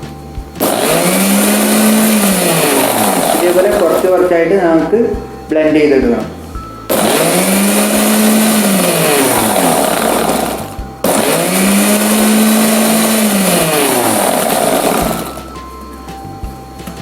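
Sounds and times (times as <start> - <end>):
mixer grinder motor blending: 0.6 - 4.5, 6.9 - 15.6.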